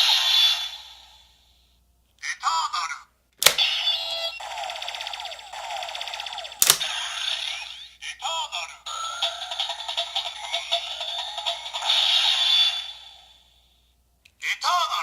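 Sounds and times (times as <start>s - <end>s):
toy electronic warbling chirp: 0.0s - 1.1s, 3.6s - 8.0s, 8.9s - 13.2s
rapid pulsing electronic tones: 3.8s - 6.6s
sharp plastic clicks: 6.6s - 6.9s.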